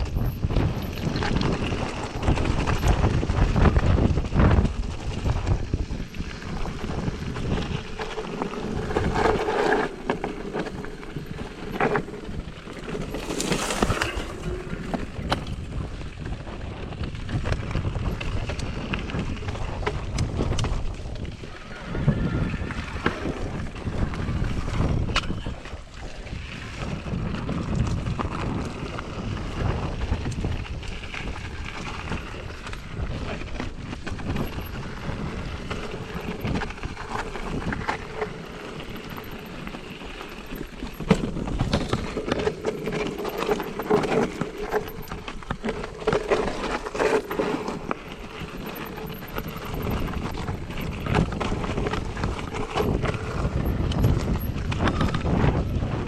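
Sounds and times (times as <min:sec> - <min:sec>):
tyre rumble: 0:00.0 - 0:21.0
bike rattling and knocking: 0:00.0 - 0:21.3, 0:26.6 - 0:56.0
wind buffeting microphone: 0:00.0 - 0:56.0.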